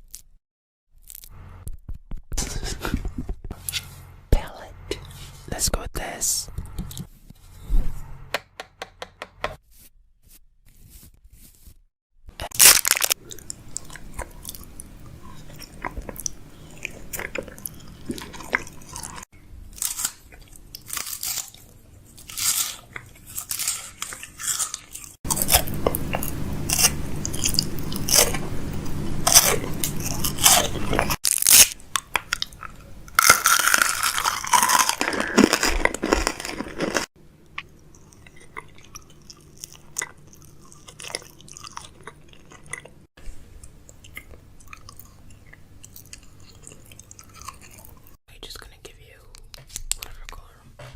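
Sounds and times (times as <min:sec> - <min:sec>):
low steady hum: 0:01.3 - 0:08.4, 0:12.3 - 0:50.9
close crunching and clicking: 0:12.4 - 0:42.9.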